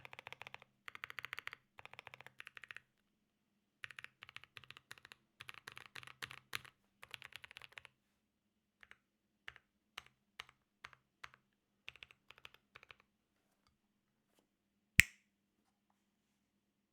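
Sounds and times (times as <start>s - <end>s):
typing on mechanical keyboard: 0.0s - 2.9s, 3.8s - 7.9s, 8.8s - 13.1s.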